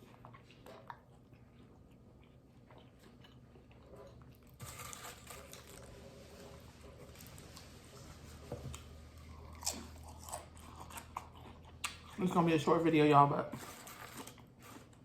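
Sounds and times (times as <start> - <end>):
mouth chewing and crunchy biting: 0.0 - 6.0, 8.7 - 12.7.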